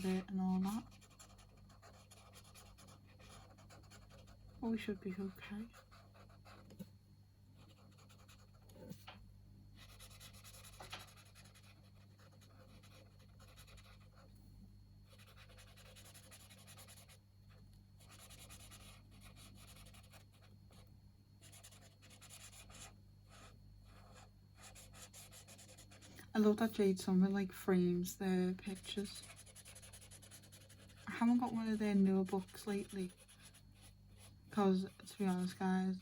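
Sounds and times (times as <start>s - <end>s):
low steady hum: 0.0s - 36.0s
pen scratching on paper: 0.6s - 4.5s, 5.7s - 6.7s, 7.6s - 9.0s, 9.8s - 14.3s, 15.1s - 17.2s, 18.0s - 20.8s, 21.4s - 26.0s, 28.7s - 35.5s.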